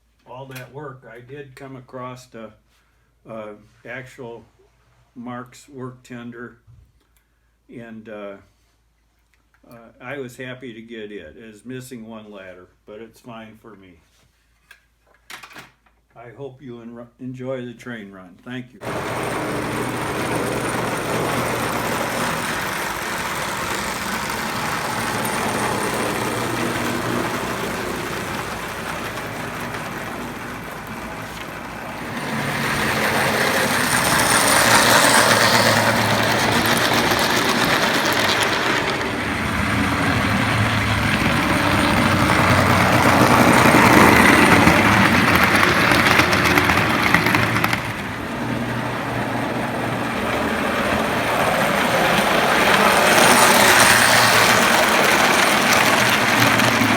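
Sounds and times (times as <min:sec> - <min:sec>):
toy train motor whir: 0:18.8 - 0:56.9
wheel and rail clatter: 0:18.8 - 0:56.9.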